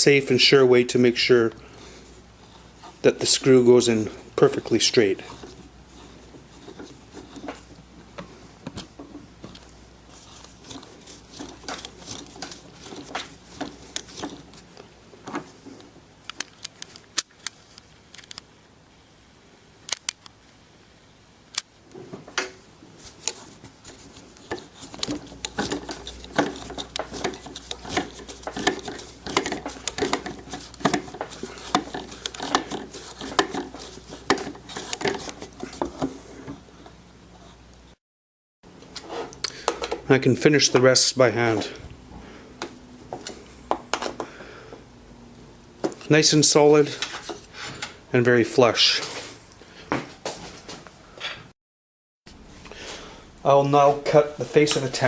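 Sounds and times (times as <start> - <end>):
insert nut clicking and creaking in wood: 23.3 - 36.1.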